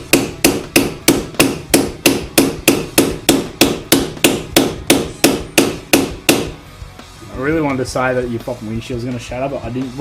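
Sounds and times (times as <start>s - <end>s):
hammer striking with ringing decay: 0.0s - 6.6s.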